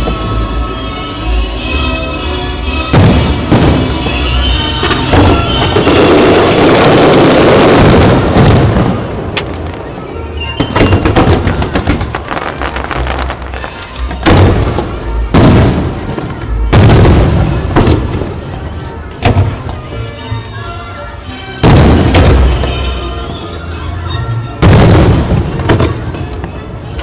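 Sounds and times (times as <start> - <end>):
fireworks booming and crackling: 0.0 - 1.0, 2.7 - 20.1, 21.6 - 23.6, 24.5 - 27.0
loud music: 19.1 - 27.0.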